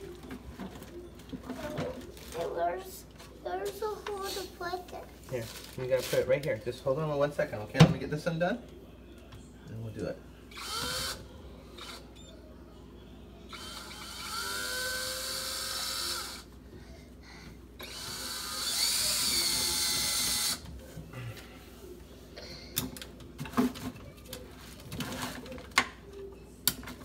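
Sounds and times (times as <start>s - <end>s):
power drill spinning: 10.5s - 11.2s, 11.8s - 12.3s, 13.5s - 16.5s, 17.8s - 20.6s.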